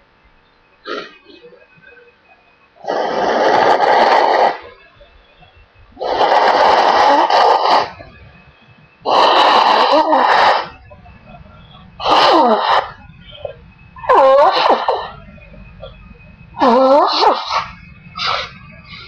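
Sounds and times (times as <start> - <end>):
wavering pitched nasal sound: 6.0 - 8.1, 9.0 - 11.0, 12.0 - 16.0, 16.6 - 19.0
woman blowing her nose: 12.0 - 13.0, 16.6 - 18.5.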